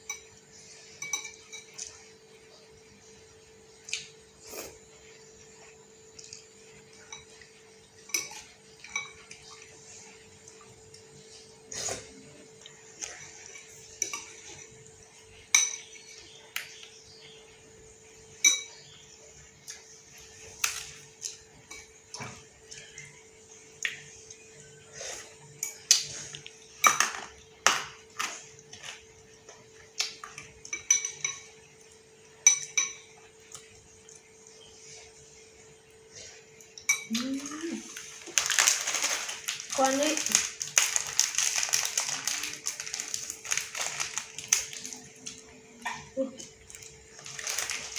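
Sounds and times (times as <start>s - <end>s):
cutlery clinking against bowl: 0.0s - 2.1s, 6.3s - 9.6s, 13.0s - 16.8s, 18.4s - 18.8s, 26.8s - 33.7s, 36.6s - 37.2s.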